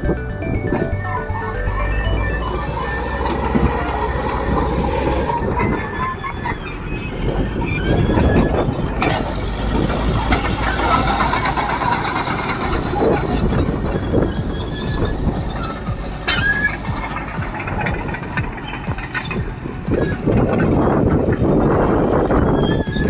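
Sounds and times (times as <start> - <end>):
bulldozer diesel engine running: 0.0 - 23.0
steel tracks squealing and clattering: 0.7 - 23.0.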